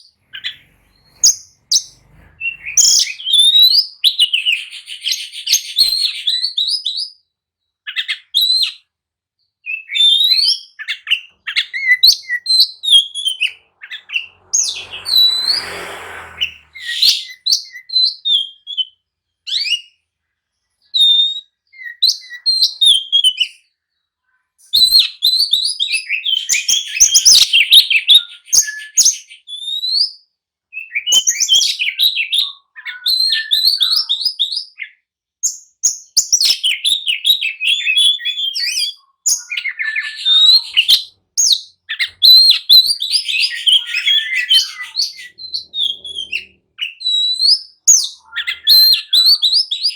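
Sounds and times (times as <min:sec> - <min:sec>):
bird singing whistled notes: 0:00.0 - 0:07.3, 0:09.5 - 0:20.0, 0:35.4 - 0:49.9.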